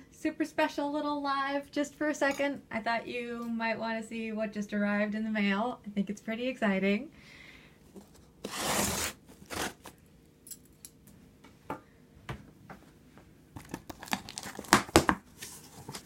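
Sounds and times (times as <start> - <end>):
packaging tearing and crinkling: 8.5 - 9.9, 13.6 - 16.0.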